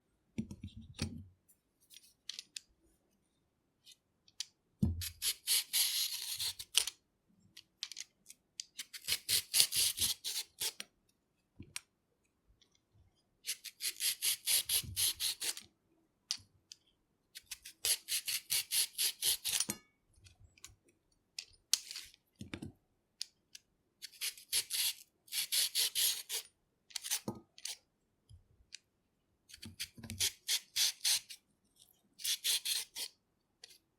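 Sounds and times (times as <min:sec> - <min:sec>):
peeler scraping carrot: 0:05.0 - 0:06.8, 0:13.5 - 0:15.6, 0:24.0 - 0:27.8, 0:29.5 - 0:31.4, 0:32.2 - 0:33.2.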